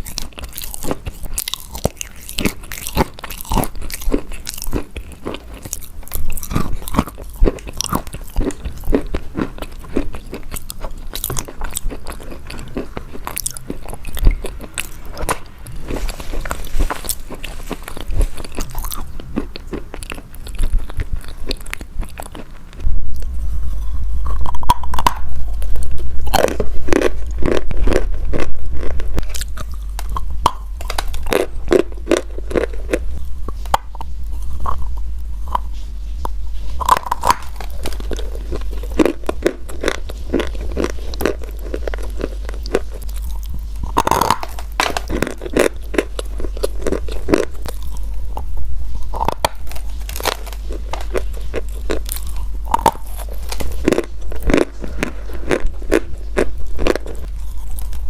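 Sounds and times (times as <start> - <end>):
crunchy chewing: 0.0 - 58.0
steady low hum: 0.0 - 58.0.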